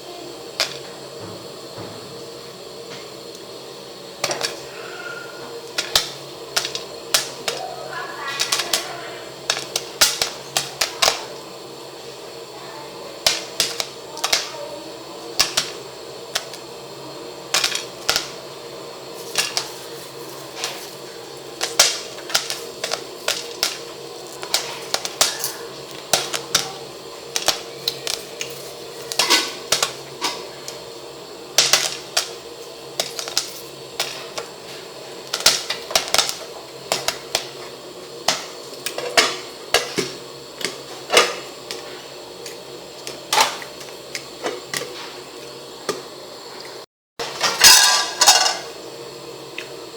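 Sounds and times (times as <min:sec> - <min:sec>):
steady low hum: 0:00.0 - 0:46.6
knocks and clicks of food preparation: 0:00.5 - 0:03.5, 0:04.2 - 0:07.7, 0:08.3 - 0:11.5, 0:13.2 - 0:14.6, 0:15.2 - 0:16.8, 0:17.4 - 0:30.9, 0:31.5 - 0:48.8.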